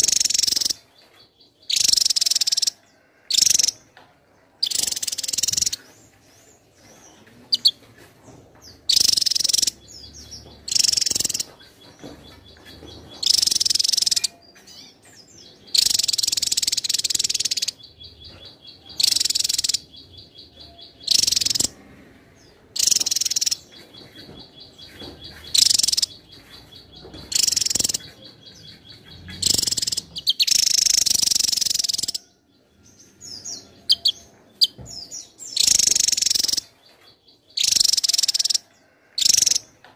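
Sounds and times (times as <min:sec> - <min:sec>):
bird singing high-pitched phrases: 0:08.8 - 0:21.8, 0:22.8 - 0:36.7.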